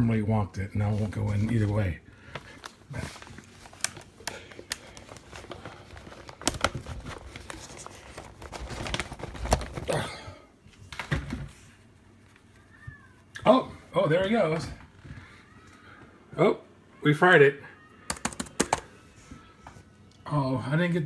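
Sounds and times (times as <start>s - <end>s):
hands rustling: 0.8s - 9.9s
clicks and taps on laptop: 18.1s - 18.9s.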